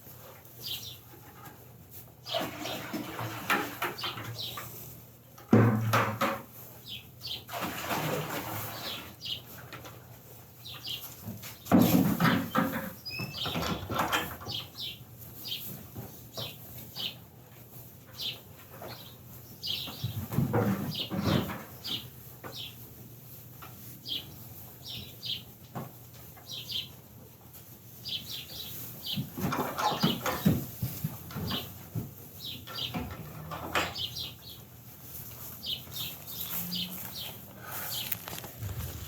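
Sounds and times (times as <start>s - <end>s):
birds chirping: 35.6s - 39.0s
wings rustling and flapping: 37.9s - 39.0s.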